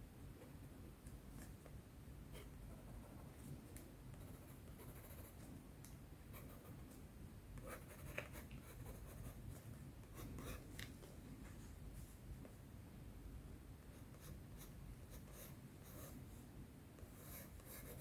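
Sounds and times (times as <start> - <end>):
pencil scratching on paper: 4.2 - 5.5, 7.6 - 10.7, 17.0 - 18.0.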